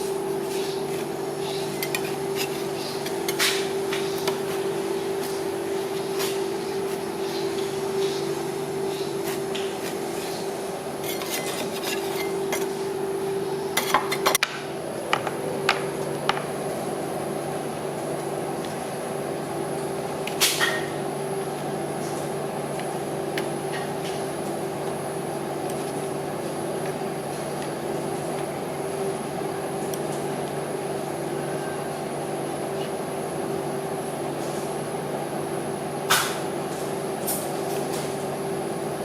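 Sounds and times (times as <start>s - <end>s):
steady machine hum: 0.0s - 39.0s
metal spatulas tapping and scraping: 1.7s - 3.5s, 11.0s - 12.7s.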